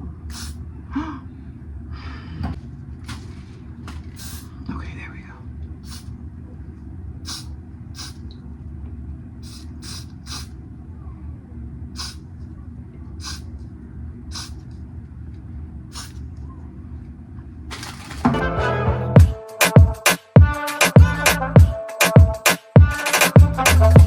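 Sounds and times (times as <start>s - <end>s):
low steady hum: 0.0s - 19.2s
aerosol spray hissing: 0.3s - 0.6s, 4.2s - 4.5s, 5.8s - 6.1s, 7.3s - 8.2s, 9.4s - 10.5s, 12.0s - 12.2s, 13.2s - 13.4s, 14.3s - 14.6s, 15.9s - 16.2s.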